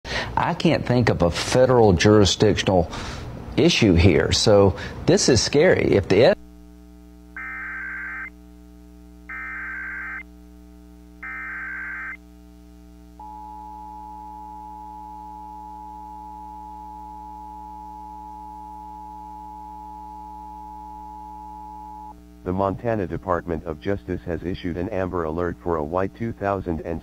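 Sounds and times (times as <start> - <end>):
steady low hum: 0.1 - 27.0
harsh buzzing data bursts: 6.2 - 13.3
two-tone attention signal: 7.4 - 8.3, 9.3 - 10.2, 11.2 - 12.2.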